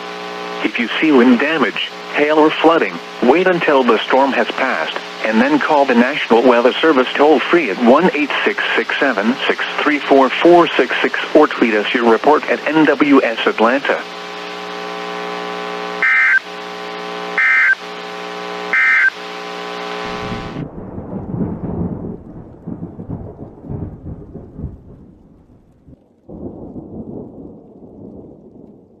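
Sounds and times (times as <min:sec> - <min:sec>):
short data bursts: 0:00.0 - 0:20.6
steady buzzing hum: 0:00.0 - 0:21.8
low irregular rumbling: 0:20.1 - 0:27.1.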